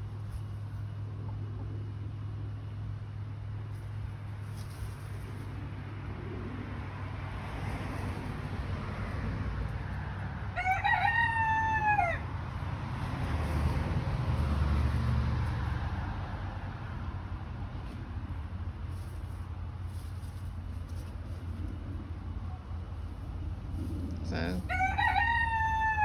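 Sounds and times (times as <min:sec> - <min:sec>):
steady low rumble: 0:00.0 - 0:10.6, 0:12.2 - 0:26.0
rooster crowing: 0:10.4 - 0:12.6, 0:24.5 - 0:26.0.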